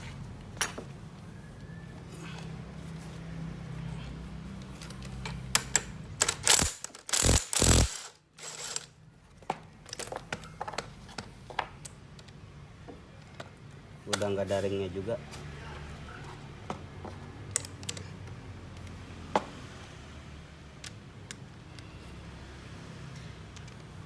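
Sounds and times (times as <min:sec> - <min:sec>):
metal tools clanking: 0:04.5 - 0:08.9.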